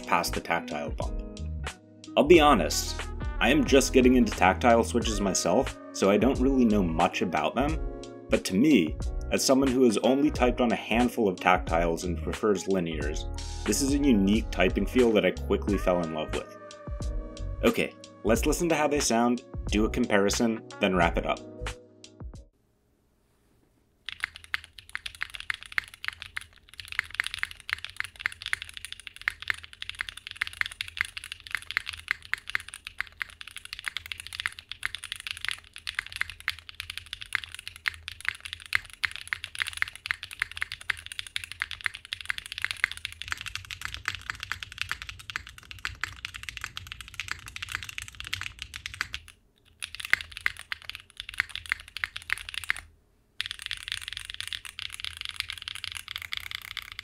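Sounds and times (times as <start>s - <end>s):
fast typing on mechanical keyboard: 24.0s - 57.0s.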